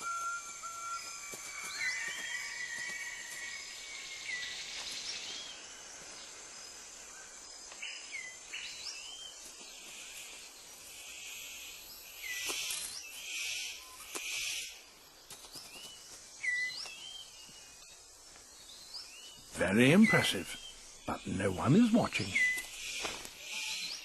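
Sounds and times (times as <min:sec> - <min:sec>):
whistled bird calls: 0:00.0 - 0:04.6, 0:21.9 - 0:24.0
insect drone: 0:00.0 - 0:24.0.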